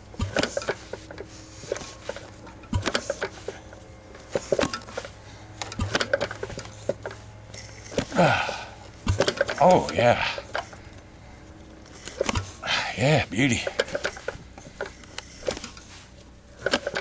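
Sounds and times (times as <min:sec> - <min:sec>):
engine compression thumps: 0:00.0 - 0:12.9
metallic clicks and clatter: 0:00.1 - 0:08.2, 0:13.6 - 0:17.0.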